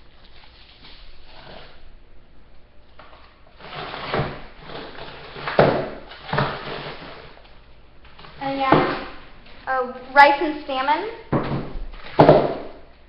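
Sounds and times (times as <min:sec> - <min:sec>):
frozen food packages rustling: 0:00.0 - 0:01.9
sharp knocks: 0:11.3 - 0:12.8.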